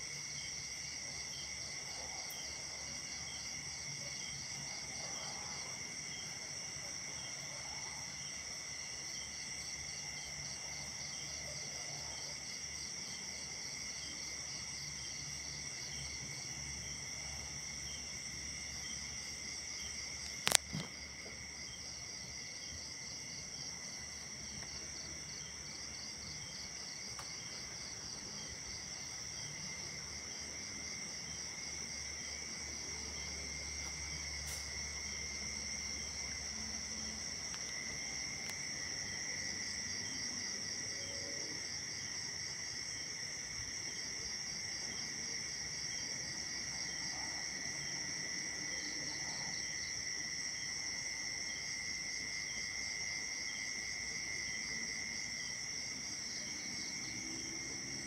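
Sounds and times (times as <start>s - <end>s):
crickets and insects trilling: 12.0s - 58.0s.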